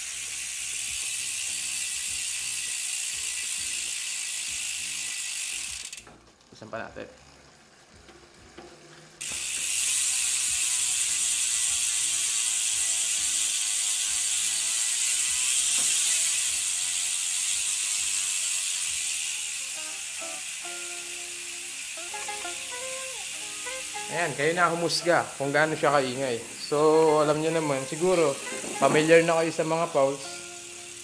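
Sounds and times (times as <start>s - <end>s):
bicycle freehub ratchet buzzing: 0.0s - 31.0s.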